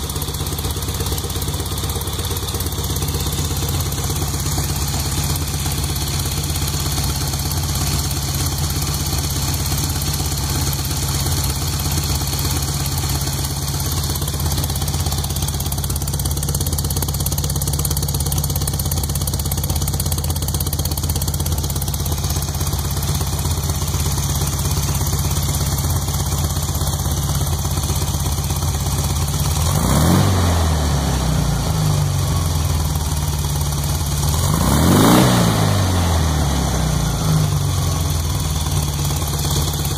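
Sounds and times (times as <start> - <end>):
engine idling and revving: 0.0 - 39.9.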